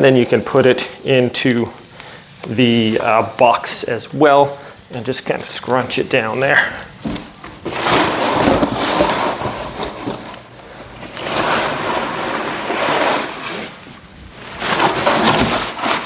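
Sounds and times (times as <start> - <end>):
plastic branches rustling and scraping: 5.3 - 16.0.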